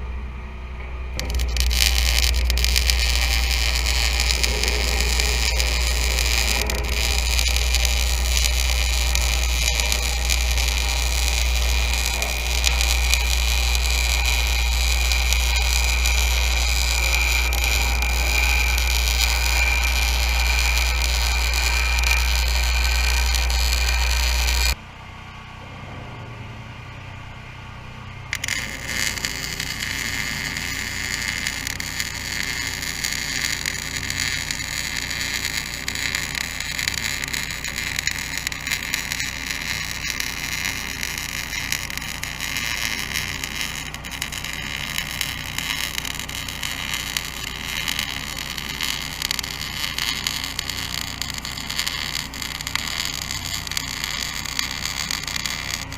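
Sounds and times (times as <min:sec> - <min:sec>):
portable generator running: 0:01.0 - 0:25.0
welder arc crackling: 0:01.1 - 0:24.8, 0:28.3 - 0:55.9.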